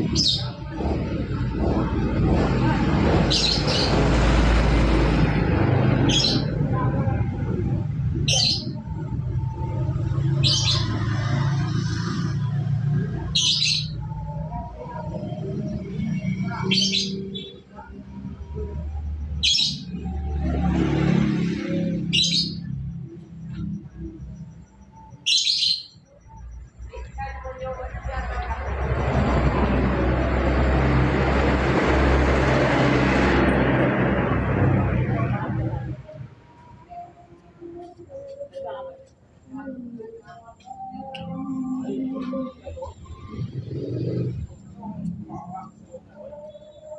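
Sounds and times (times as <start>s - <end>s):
steady low rumble: 0.0s - 13.3s, 26.3s - 36.9s
vehicle engine humming: 0.0s - 46.9s.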